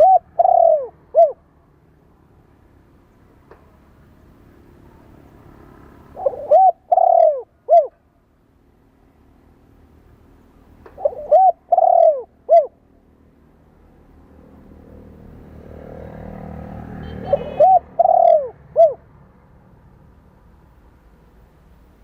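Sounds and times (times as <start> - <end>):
dove cooing: 0.0 - 1.5, 6.1 - 8.0, 10.9 - 12.8, 17.1 - 19.1.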